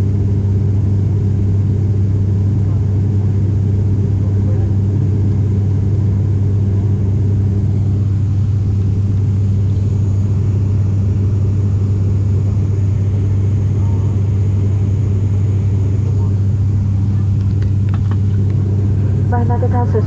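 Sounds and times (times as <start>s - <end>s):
airliner propeller engines droning: 0.0s - 20.0s.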